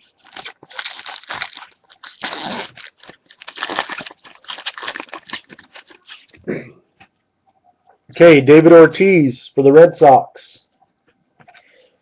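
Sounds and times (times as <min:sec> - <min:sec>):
foil wrapper crinkling and tearing: 0:00.0 - 0:06.4.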